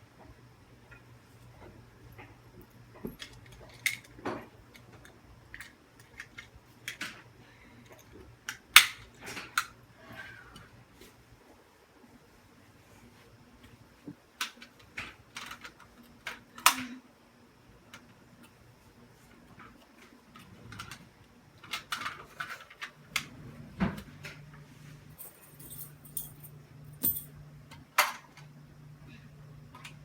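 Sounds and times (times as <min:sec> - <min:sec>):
light metallic jingle: 0:25.2 - 0:27.3.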